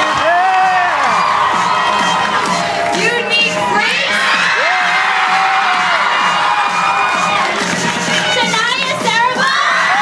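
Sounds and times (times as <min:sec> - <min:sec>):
children cheering and screaming: 0:00.0 - 0:02.9, 0:03.5 - 0:08.4, 0:09.2 - 0:10.0
background music: 0:00.0 - 0:10.0.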